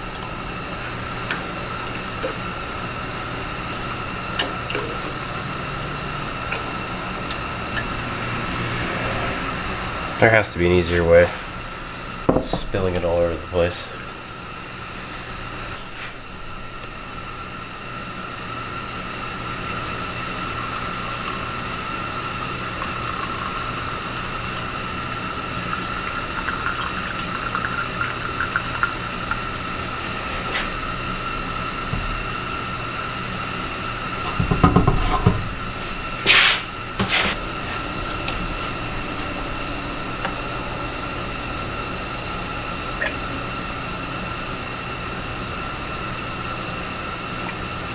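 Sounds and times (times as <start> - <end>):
machine hiss and hum: 0.0 - 47.9
short loud hisses: 35.9 - 37.9.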